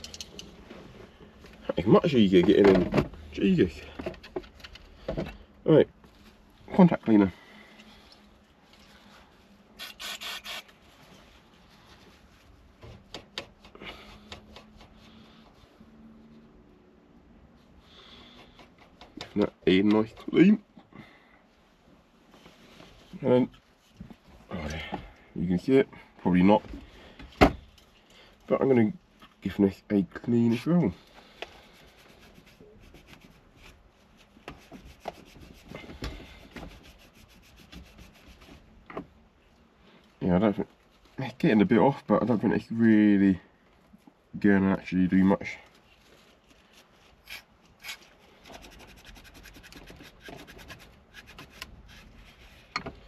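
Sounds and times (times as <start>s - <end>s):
light rubbing and scraping: 30.3s - 39.0s, 45.4s - 53.0s
hand scrubbing part: 47.2s - 52.7s.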